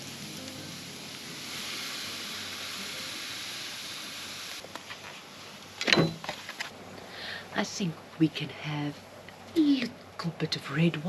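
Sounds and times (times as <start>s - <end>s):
steak sizzling over fire: 0.0s - 6.7s.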